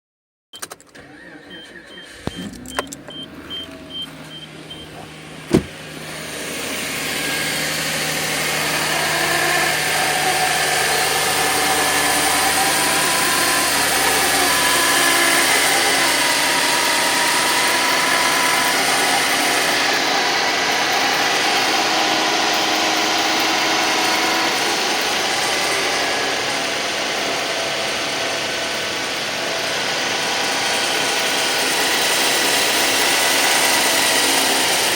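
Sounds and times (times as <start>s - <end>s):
engine running with grinding: 0.9s - 34.9s
quick beeps: 1.5s - 4.9s
clicks: 2.2s - 3.8s.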